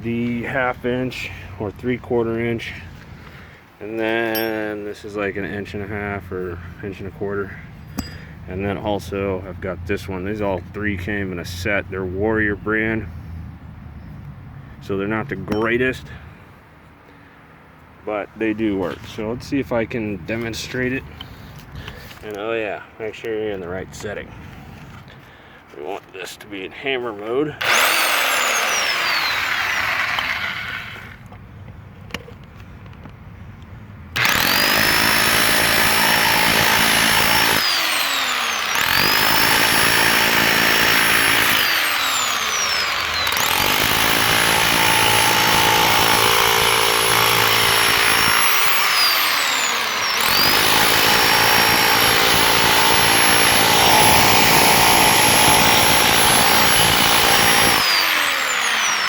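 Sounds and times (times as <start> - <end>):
rotary hammer chiselling concrete: 27.6 - 31.2, 34.2 - 59.0.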